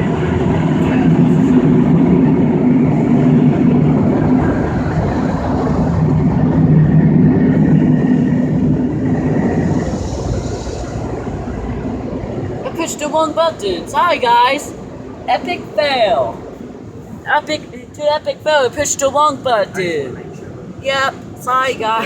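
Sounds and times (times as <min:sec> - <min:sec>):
low motor hum: 0:00.0 - 0:12.7
car wash dryers blowing air: 0:00.0 - 0:19.4.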